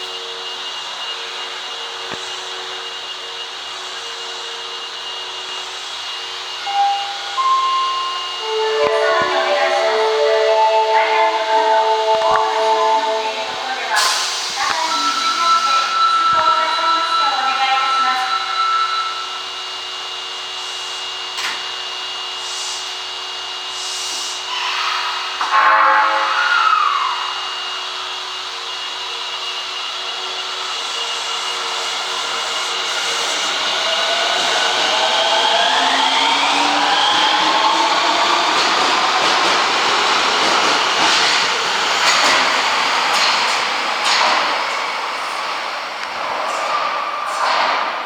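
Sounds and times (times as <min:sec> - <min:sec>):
subway train hiss and hum: 0:00.0 - 0:48.0
high whine: 0:06.6 - 0:15.1
chime notes: 0:06.7 - 0:13.9.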